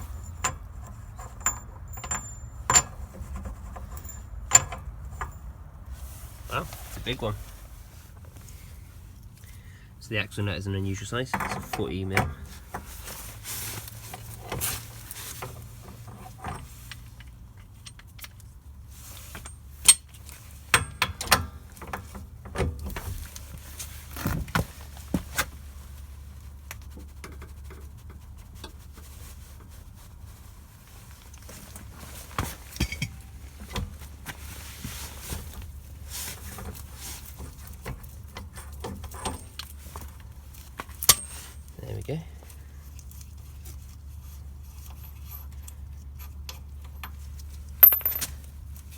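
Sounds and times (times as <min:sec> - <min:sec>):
metal tools clinking and knocking: 0:00.0 - 0:05.6, 0:32.4 - 0:33.8, 0:40.8 - 0:41.7, 0:44.7 - 0:48.5
low steady hum: 0:00.0 - 0:48.9.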